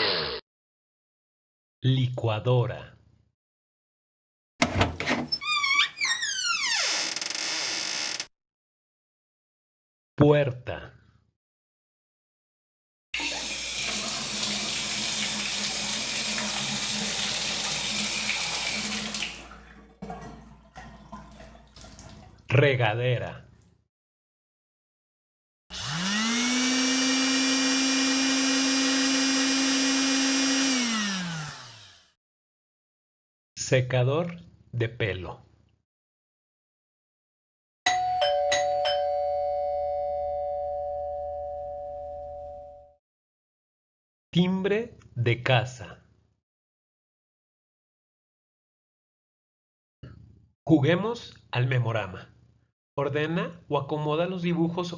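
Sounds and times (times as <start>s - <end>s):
shower spraying water: 13.2s - 19.6s
doorbell chime ding-dong: 37.9s - 43.0s.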